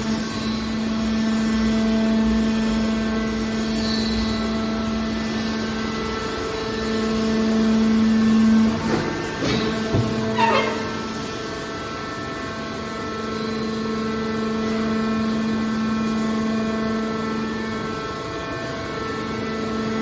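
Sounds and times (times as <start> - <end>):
hydraulic pump humming: 8.2 - 11.6.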